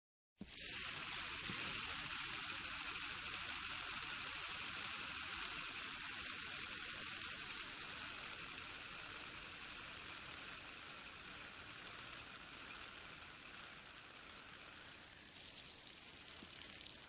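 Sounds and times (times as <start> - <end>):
fidget spinner whirring: 0.4 - 17.0.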